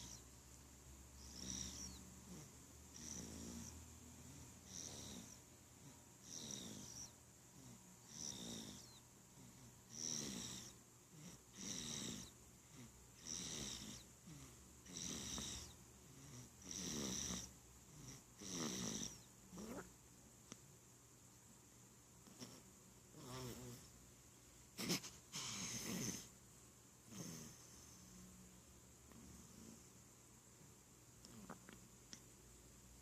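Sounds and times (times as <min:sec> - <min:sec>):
baby snoring: 0:00.0 - 0:00.3, 0:01.1 - 0:19.9, 0:22.2 - 0:23.9, 0:24.8 - 0:26.4, 0:27.1 - 0:28.2.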